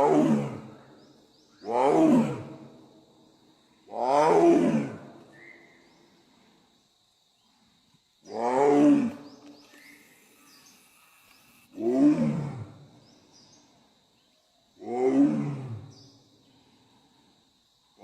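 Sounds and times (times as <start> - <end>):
big cat roaring: 0.0 - 0.7, 1.7 - 2.6, 4.0 - 5.1, 11.8 - 12.9, 14.8 - 15.9.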